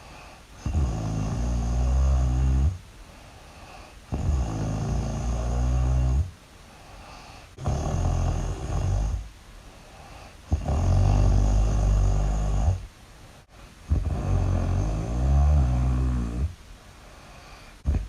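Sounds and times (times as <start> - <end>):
loud snoring: 0.6 - 2.8, 3.7 - 6.4, 7.6 - 9.3, 10.2 - 12.9, 13.9 - 16.6.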